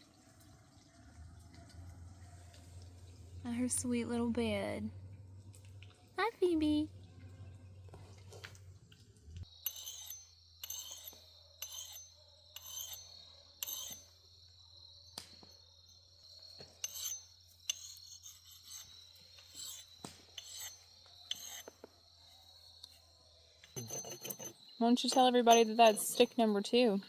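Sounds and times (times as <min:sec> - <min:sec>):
knife shaving wood: 0:09.6 - 0:14.1, 0:16.6 - 0:23.0.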